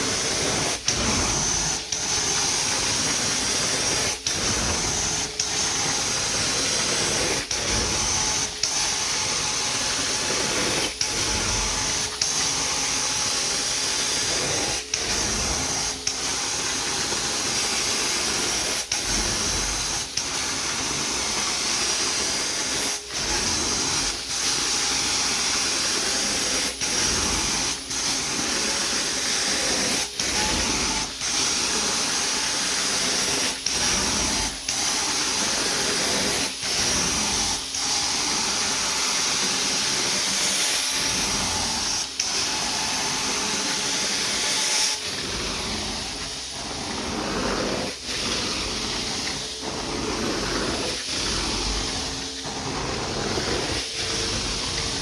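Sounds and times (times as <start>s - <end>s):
carpet extraction wand hissing: 0.0s - 55.0s.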